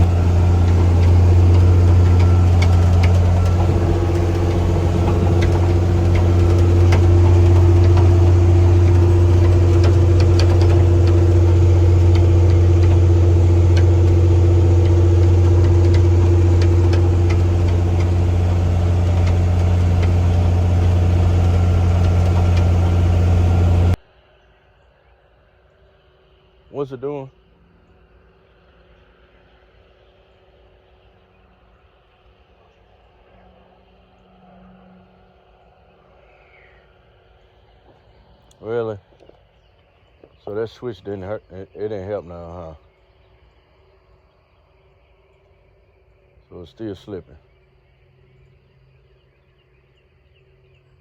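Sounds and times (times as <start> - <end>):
diesel tractor engine droning: 0.0 - 24.0
faint clicks and rattles: 0.0 - 24.0.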